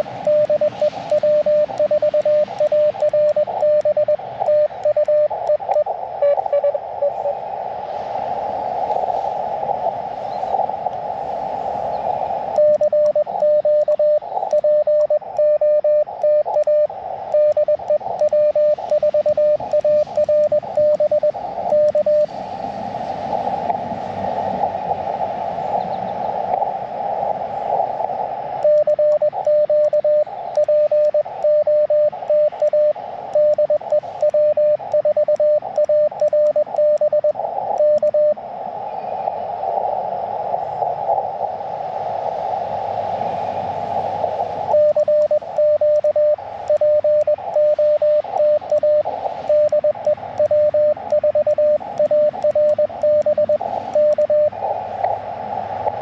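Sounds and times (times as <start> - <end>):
morse code tone: 0.0 - 7.4, 12.5 - 22.3, 28.5 - 38.4, 44.7 - 54.8
radio band hiss: 0.0 - 56.0.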